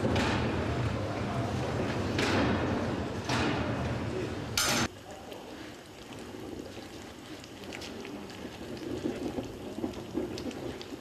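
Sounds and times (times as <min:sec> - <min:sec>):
molten metal pouring crackling hiss: 0:04.0 - 0:11.0.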